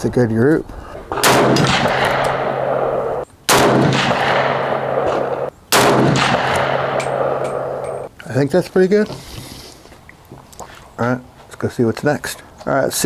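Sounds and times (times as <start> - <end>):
rifle shots echoing: 0.9 - 8.1.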